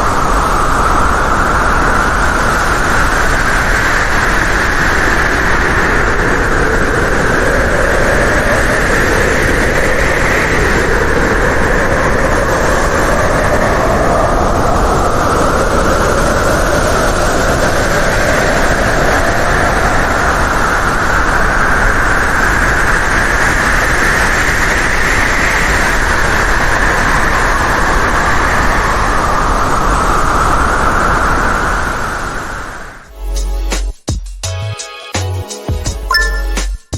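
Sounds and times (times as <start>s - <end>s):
strong wind howling: 0.0s - 33.1s.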